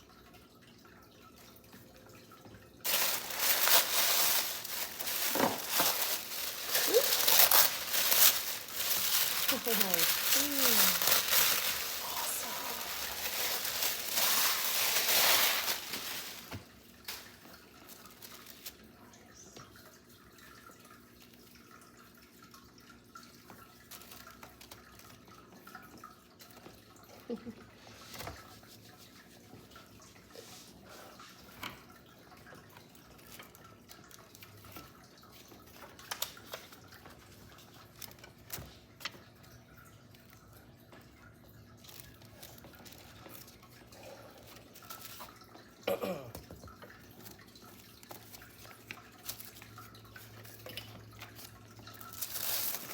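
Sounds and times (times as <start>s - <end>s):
packaging crinkling: 2.8s - 18.8s, 51.3s - 52.9s.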